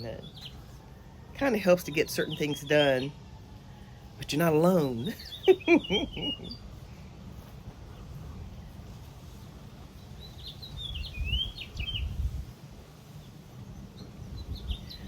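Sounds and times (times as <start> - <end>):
songbird chirping and whistling: 5.0 - 6.6, 10.2 - 12.3.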